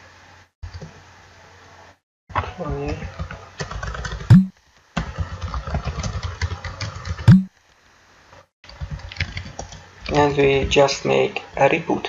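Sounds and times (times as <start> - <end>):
fast keyboard typing: 2.7 - 7.5, 8.7 - 10.9.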